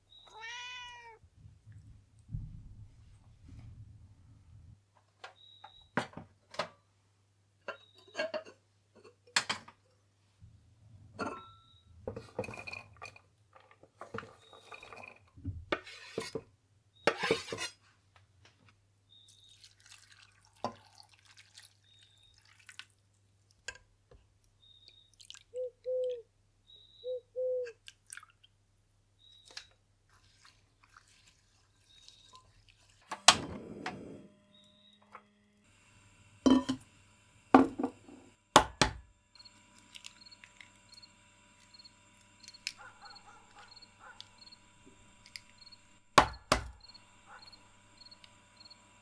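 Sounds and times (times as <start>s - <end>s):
cookware and dishes clinking: 7.7s - 9.7s, 11.2s - 15.3s, 36.5s - 36.8s.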